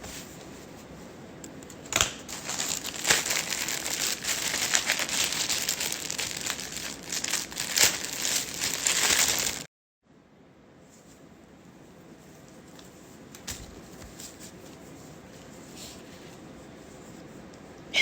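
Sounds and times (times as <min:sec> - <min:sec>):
packaging crinkling: 0:01.9 - 0:09.7.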